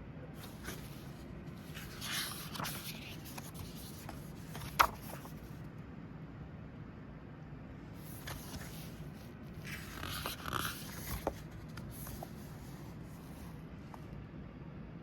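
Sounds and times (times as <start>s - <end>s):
book pages rustling: 0.4s - 5.6s, 8.0s - 14.1s.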